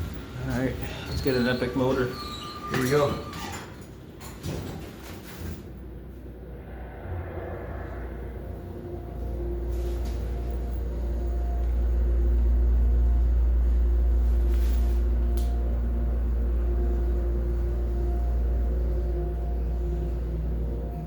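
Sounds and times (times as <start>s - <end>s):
elevator drive humming: 0.0s - 21.0s
faint wavering tones: 5.8s - 21.0s.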